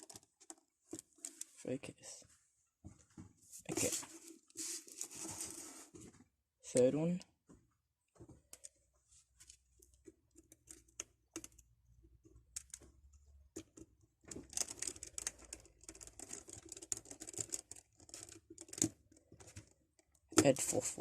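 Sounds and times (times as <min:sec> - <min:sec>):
screwdriver clicking and scratching: 0:13.6 - 0:19.7.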